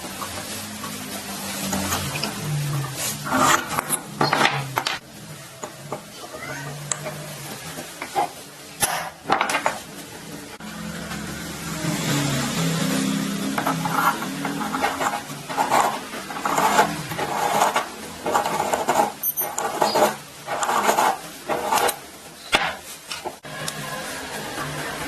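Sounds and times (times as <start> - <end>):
scraping strokes: 13.6 - 22.0.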